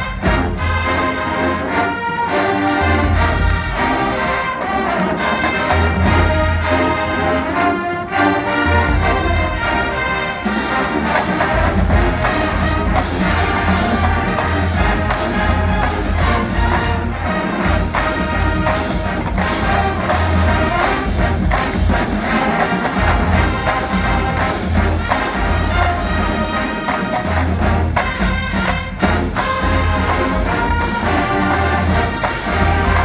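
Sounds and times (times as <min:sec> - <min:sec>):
marching band brass: 0:00.0 - 0:33.0
drum hits: 0:11.2 - 0:33.0.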